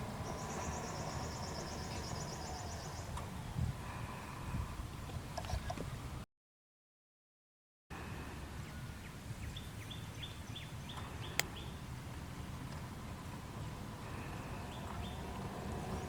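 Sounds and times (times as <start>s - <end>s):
low outdoor rumble: 10.5s - 16.0s.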